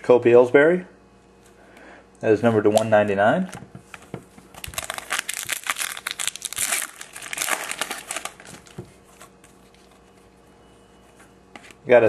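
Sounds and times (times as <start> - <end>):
wrapper crinkling and rustling: 3.9 - 10.3.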